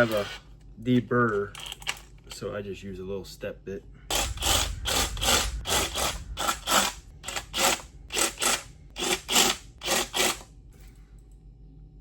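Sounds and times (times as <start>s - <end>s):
drill bit rasping scrapes: 4.1s - 10.4s.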